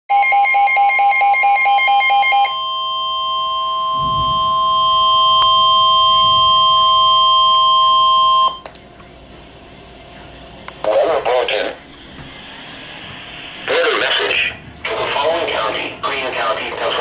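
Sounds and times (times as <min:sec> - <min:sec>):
rapid alarm beeping: 0:00.1 - 0:08.7
steady high alarm tone: 0:00.1 - 0:08.7, 0:11.1 - 0:17.0
faint radio hiss: 0:10.0 - 0:17.0.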